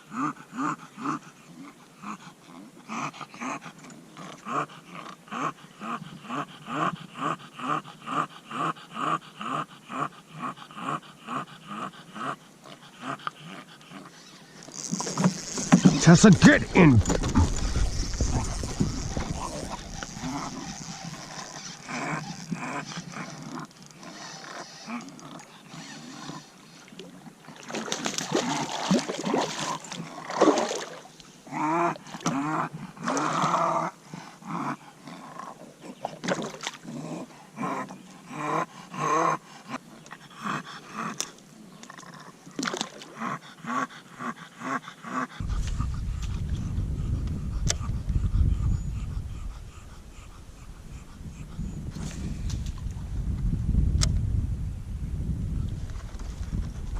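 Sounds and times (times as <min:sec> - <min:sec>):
dog growling and grunting: 0:00.0 - 0:26.5, 0:31.5 - 0:41.3, 0:43.1 - 0:53.0.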